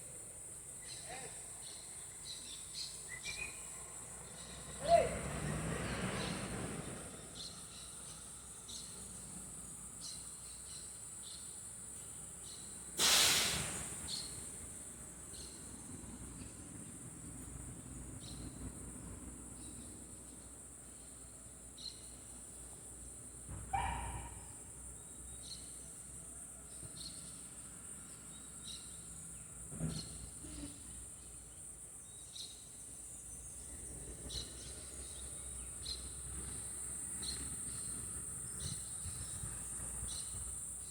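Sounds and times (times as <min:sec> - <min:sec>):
insects buzzing: 0:00.0 - 0:40.9
brief rush of noise: 0:13.0 - 0:14.0.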